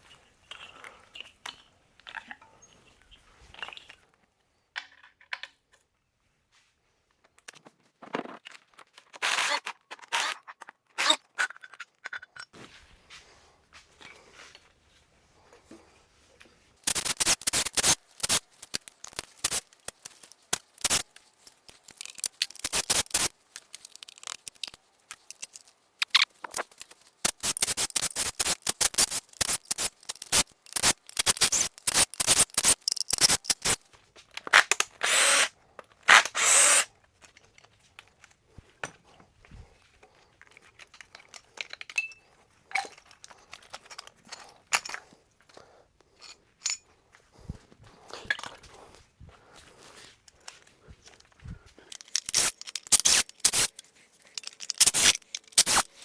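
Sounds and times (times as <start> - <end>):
rapid metallic clicking of tools: 16.8 - 33.8, 34.7 - 35.5, 36.1 - 36.9, 51.9 - 56.0
rasping bursts: 16.8 - 33.8, 35.0 - 35.5, 36.1 - 36.9, 51.9 - 56.0.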